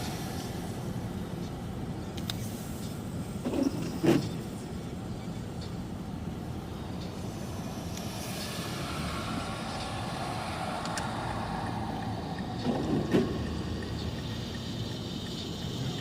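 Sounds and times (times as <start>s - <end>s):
car road and engine noise: 0.0s - 16.0s.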